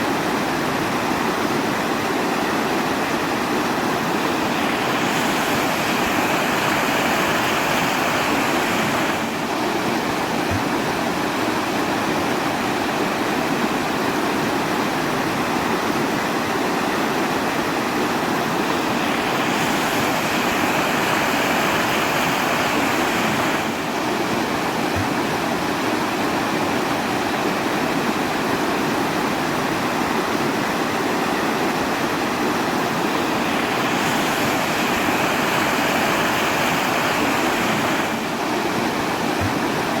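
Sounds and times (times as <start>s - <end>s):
rushing water: 0.0s - 40.0s.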